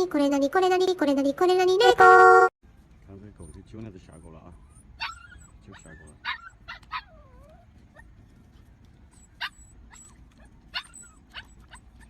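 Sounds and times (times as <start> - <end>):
dog yipping and whimpering: 3.4 - 12.0.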